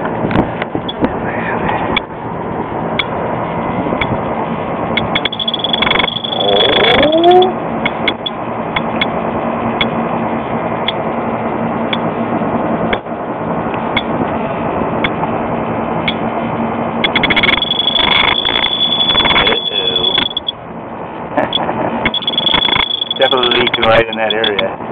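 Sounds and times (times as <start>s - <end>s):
steady rushing noise: 0.0s - 24.9s
short rising whine: 1.8s - 8.4s, 13.9s - 20.6s, 21.4s - 24.8s
steady high beep: 5.0s - 7.5s, 17.0s - 20.6s, 21.5s - 24.7s
leak detector ticking: 5.0s - 9.1s, 17.0s - 20.6s, 21.5s - 24.7s.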